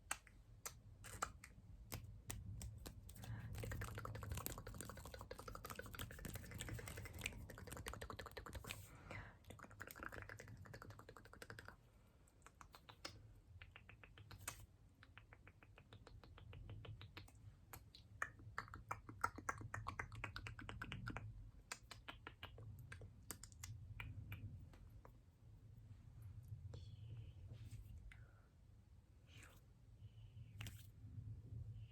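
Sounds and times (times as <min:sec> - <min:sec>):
mouth clicks: 0:12.4 - 0:24.7.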